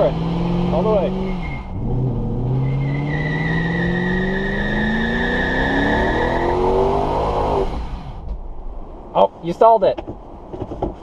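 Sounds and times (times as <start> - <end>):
car engine at full throttle: 0.0 - 8.4
tire squeal: 1.0 - 1.9, 2.5 - 8.1.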